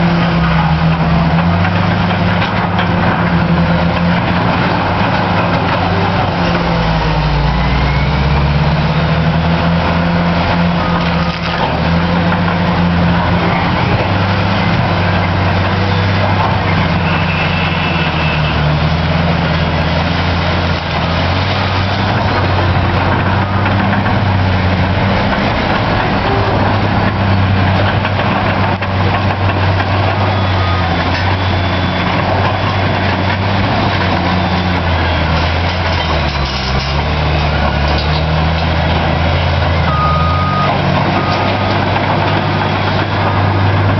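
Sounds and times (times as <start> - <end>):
bulldozer diesel engine running: 0.0 - 43.9.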